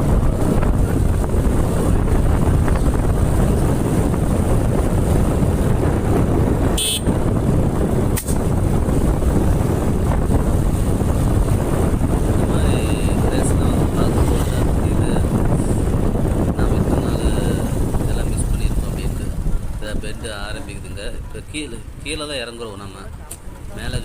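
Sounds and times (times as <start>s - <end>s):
motorbike running: 0.0s - 24.0s
wind rushing over microphone: 0.0s - 24.0s
sharp click: 8.1s - 8.4s.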